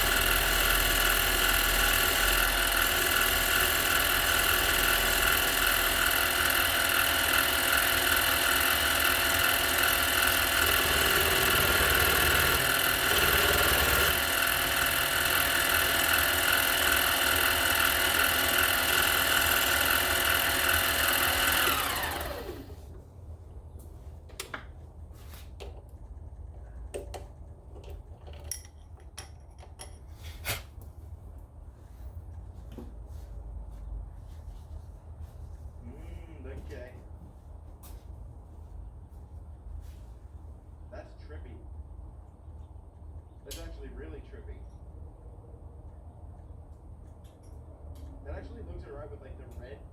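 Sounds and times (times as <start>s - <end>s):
lathe motor running: 0.0s - 22.8s.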